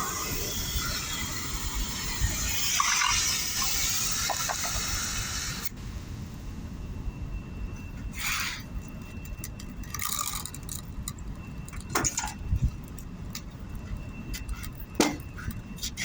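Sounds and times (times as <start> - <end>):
steady low rumble: 4.8 - 16.0.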